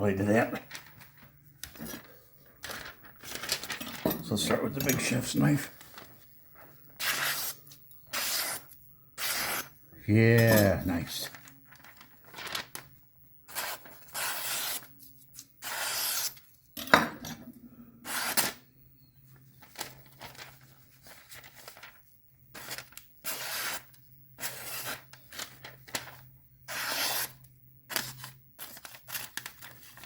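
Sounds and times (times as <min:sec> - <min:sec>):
knife slicing through paper: 0:07.0 - 0:07.6, 0:08.2 - 0:09.7, 0:13.5 - 0:14.9, 0:15.6 - 0:16.4, 0:22.6 - 0:26.0, 0:26.7 - 0:30.0.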